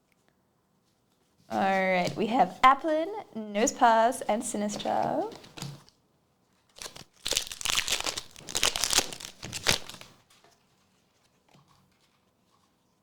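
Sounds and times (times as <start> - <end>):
foil wrapper tearing and crinkling: 6.7 - 10.2.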